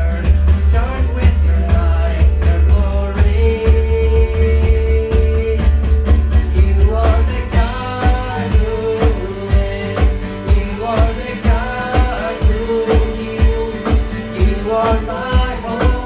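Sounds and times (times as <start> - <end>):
bass: 0.0 - 16.0
steady drum beat: 0.0 - 16.0
worship band music: 0.0 - 16.0.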